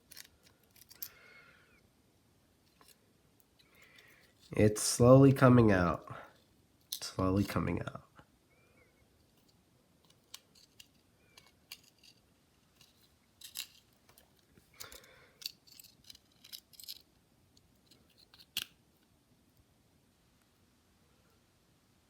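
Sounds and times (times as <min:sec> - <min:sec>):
small tools clicking and scraping: 0:00.0 - 0:01.2, 0:02.7 - 0:04.6, 0:09.3 - 0:18.8.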